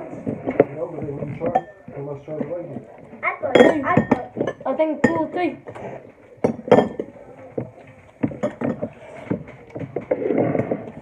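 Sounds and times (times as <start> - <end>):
utensils knocking on dishes: 1.1 - 2.6, 3.5 - 5.8, 6.4 - 7.1, 8.2 - 9.4.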